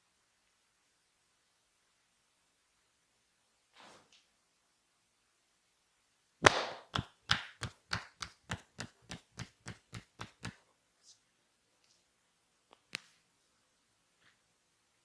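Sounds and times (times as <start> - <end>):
percussive massage strikes: 6.4 - 10.6.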